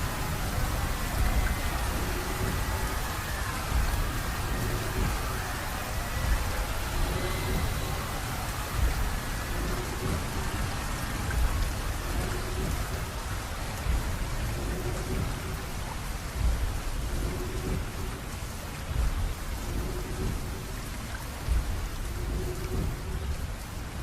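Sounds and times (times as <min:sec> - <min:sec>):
low rolls of thunder: 0:00.0 - 0:24.0
steady rain: 0:00.0 - 0:24.0.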